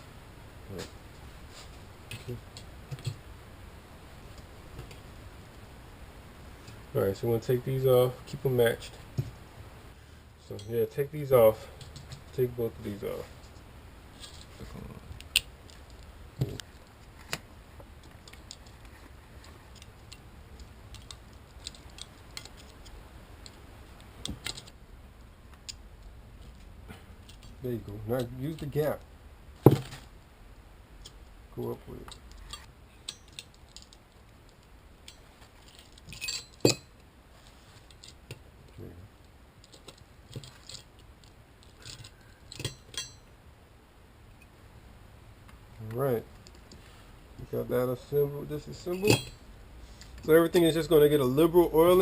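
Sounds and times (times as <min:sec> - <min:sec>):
metal parts clicking and clinking: 0:32.0 - 0:34.0, 0:34.6 - 0:37.0, 0:39.6 - 0:43.3, 0:48.8 - 0:49.4
sharp metal knocks: 0:36.1 - 0:36.9
sharp ringing metal clinks: 0:36.1 - 0:36.9, 0:42.6 - 0:43.3.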